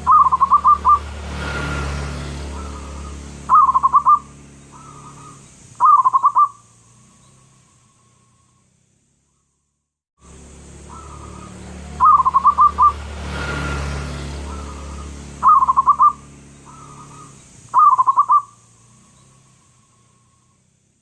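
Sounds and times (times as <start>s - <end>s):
dove cooing: 0.0s - 1.1s, 2.5s - 6.6s, 10.8s - 13.0s, 14.4s - 18.6s
background hum and hiss: 0.0s - 21.0s.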